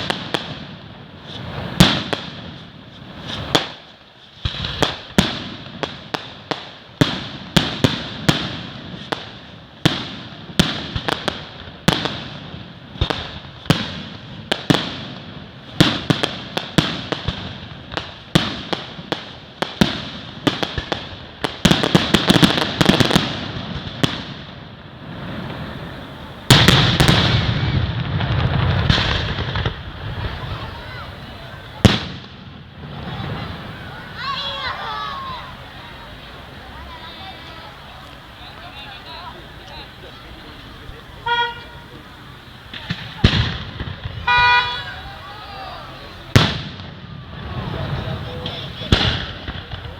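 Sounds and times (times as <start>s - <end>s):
fireworks bangs: 0.0s - 49.9s.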